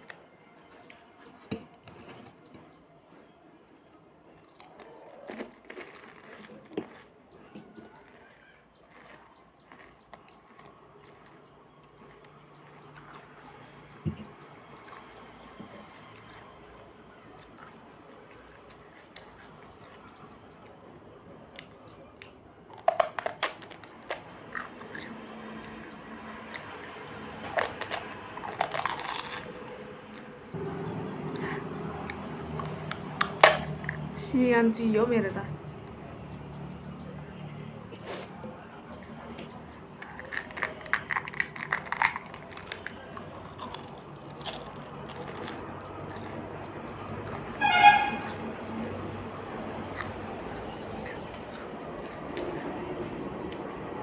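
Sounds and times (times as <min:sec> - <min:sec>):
person crunching crisp food: 0:04.4 - 0:20.8, 0:21.6 - 0:30.4, 0:39.9 - 0:47.6.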